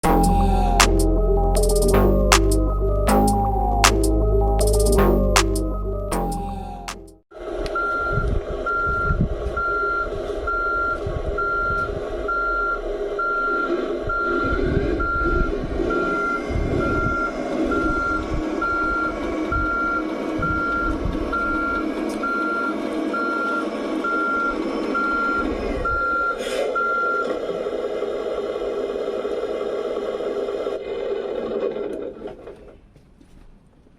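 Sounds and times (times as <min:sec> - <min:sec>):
reversing beeper: 0:00.0 - 0:07.1, 0:07.8 - 0:27.4
simulated diesel engine running: 0:11.9 - 0:32.5.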